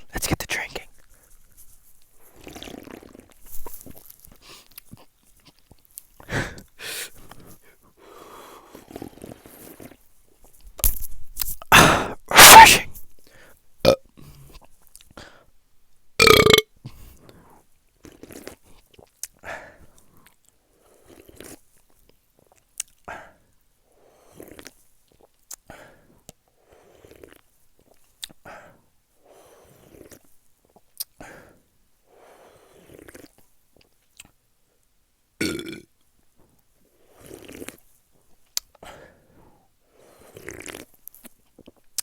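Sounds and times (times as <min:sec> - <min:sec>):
loud burp: 0:11.7 - 0:12.8, 0:16.2 - 0:16.7, 0:35.4 - 0:35.9
person gulping and swallowing: 0:11.7 - 0:12.8, 0:13.8 - 0:14.0, 0:16.2 - 0:16.7, 0:35.4 - 0:35.9.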